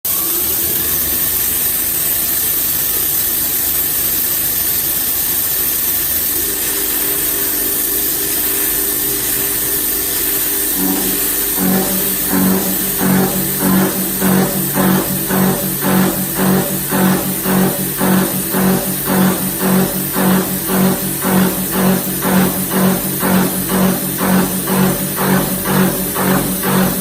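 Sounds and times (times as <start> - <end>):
milling machine whirring: 6.4 - 27.0.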